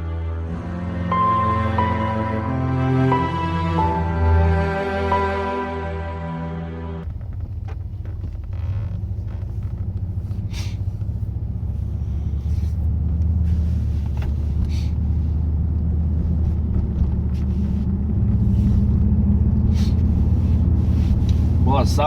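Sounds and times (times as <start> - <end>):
car engine drone from inside cabin: 0.0 - 22.0
faint engine ticks: 7.0 - 22.0.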